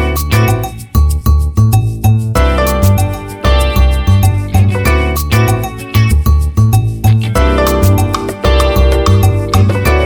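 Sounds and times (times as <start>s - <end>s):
upbeat music with strong bass: 0.0s - 10.0s.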